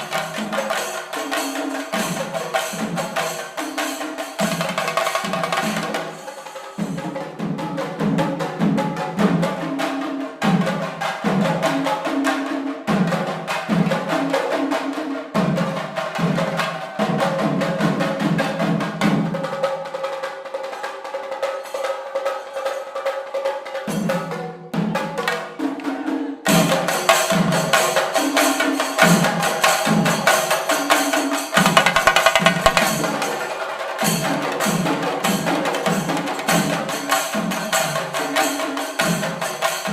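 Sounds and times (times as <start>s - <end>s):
hand cymbals clashing: 0.0s - 7.1s, 26.5s - 39.9s
drums playing fast rhythm: 0.0s - 39.9s.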